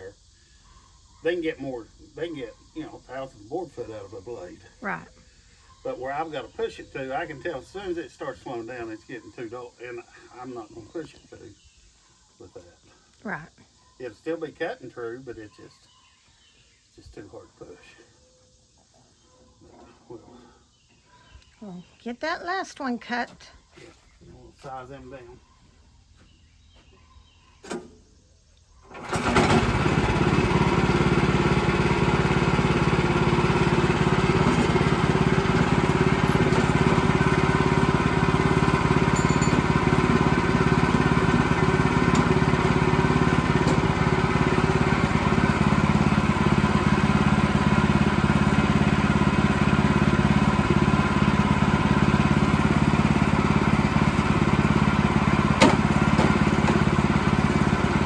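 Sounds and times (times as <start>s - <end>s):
sawmill gas engine running: 1.2s - 11.2s, 28.8s - 58.0s.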